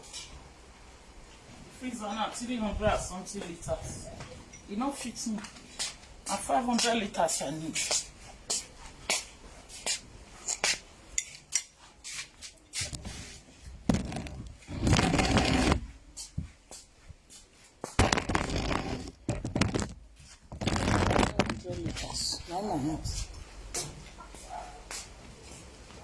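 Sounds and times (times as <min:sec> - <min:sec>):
scraping or rustling: 0:11.8 - 0:16.0, 0:17.9 - 0:22.4
objects clicking and knocking: 0:13.9 - 0:15.9, 0:18.0 - 0:22.2.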